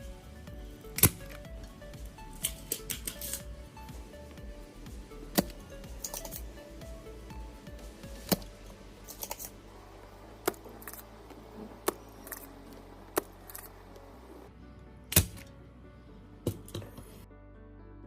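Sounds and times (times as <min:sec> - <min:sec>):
background music: 0:00.0 - 0:18.0.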